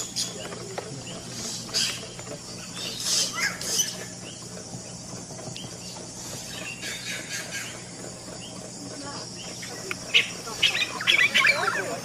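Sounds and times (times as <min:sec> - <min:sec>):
bird harsh raspy notes: 0:01.0 - 0:04.5, 0:05.8 - 0:08.6, 0:09.4 - 0:12.0.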